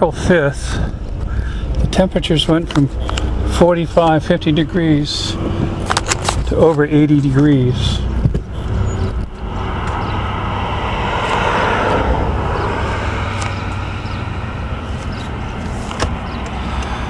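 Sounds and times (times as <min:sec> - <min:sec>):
low vehicle rumble: 0:00.0 - 0:17.0
rushing noise passing: 0:07.7 - 0:15.9.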